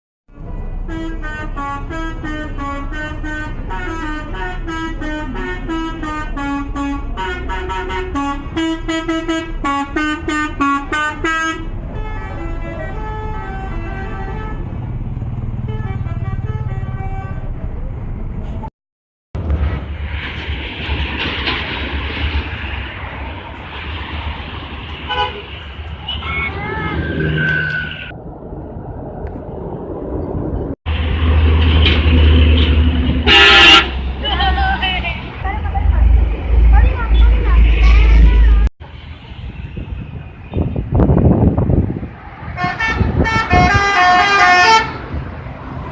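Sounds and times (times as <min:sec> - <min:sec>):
bus musical air horn: 0:00.4 - 0:14.8, 0:15.6 - 0:17.6, 0:25.1 - 0:25.5, 0:32.5 - 0:35.0, 0:42.5 - 0:45.1
noisy rumble: 0:19.4 - 0:44.3.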